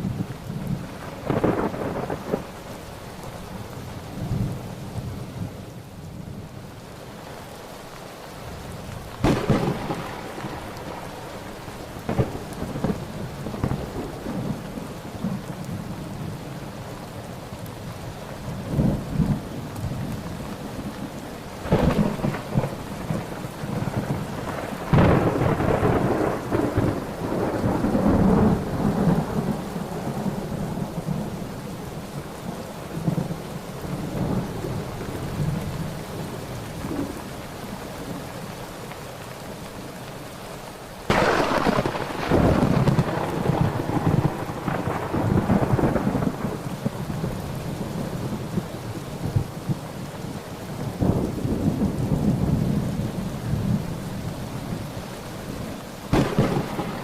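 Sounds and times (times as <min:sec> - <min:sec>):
rumble of thunder: 0:00.0 - 0:02.6, 0:09.0 - 0:16.4, 0:18.6 - 0:31.8, 0:41.1 - 0:49.8, 0:50.7 - 0:54.9, 0:56.1 - 0:57.0
steady rain: 0:00.0 - 0:57.0
thunderclaps: 0:00.6 - 0:02.6, 0:09.2 - 0:15.7, 0:21.6 - 0:31.2, 0:41.1 - 0:48.6, 0:56.1 - 0:57.0.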